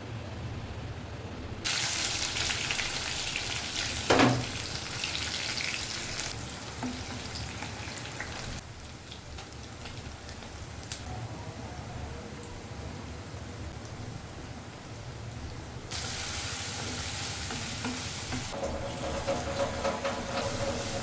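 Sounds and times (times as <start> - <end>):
food frying in hot oil: 1.6 - 11.1, 15.3 - 21.0.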